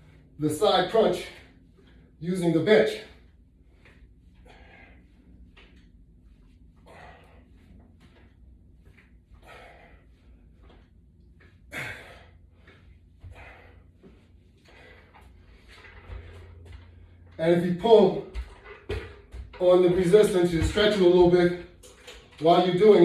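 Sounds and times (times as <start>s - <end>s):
man breathing hard: 3.1s - 17.4s.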